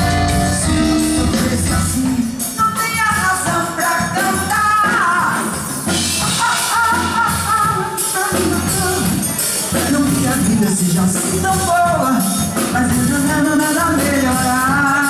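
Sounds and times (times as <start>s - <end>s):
live band playing: 0.0s - 15.0s
woman singing: 1.0s - 9.2s.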